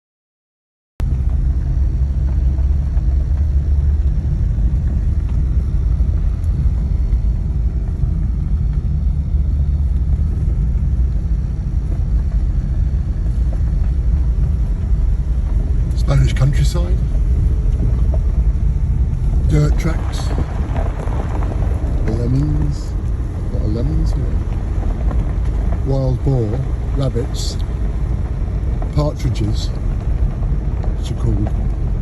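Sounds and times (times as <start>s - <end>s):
car engine and tyres rumbling: 1.0s - 32.0s.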